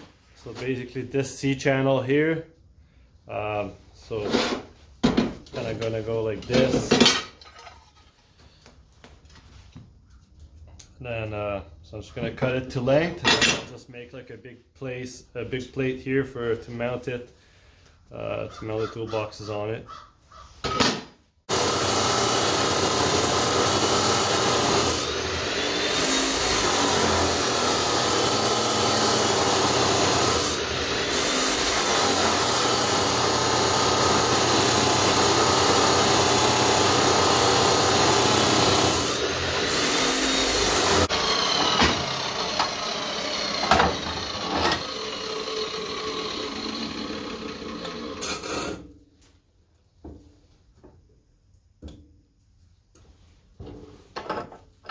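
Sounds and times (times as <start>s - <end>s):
power saw cutting steel: 21.5s - 48.8s.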